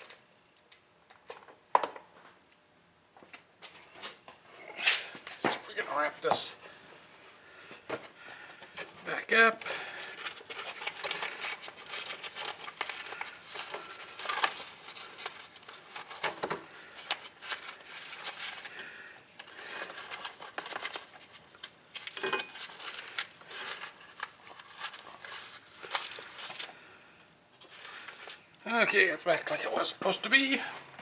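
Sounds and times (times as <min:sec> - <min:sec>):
tape tearing and crackling: 0:09.9 - 0:18.8, 0:19.4 - 0:26.8.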